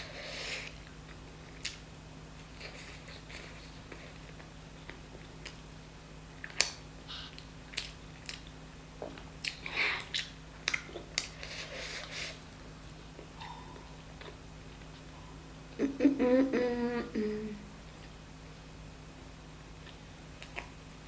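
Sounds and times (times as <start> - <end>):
wet lip smacks: 6.4 - 8.4, 9.0 - 11.3
chewing: 7.4 - 12.2.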